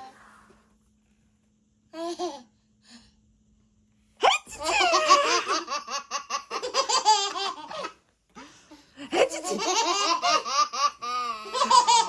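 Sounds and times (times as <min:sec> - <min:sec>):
small child laughing hard: 0:04.2 - 0:08.0, 0:09.1 - 0:12.0.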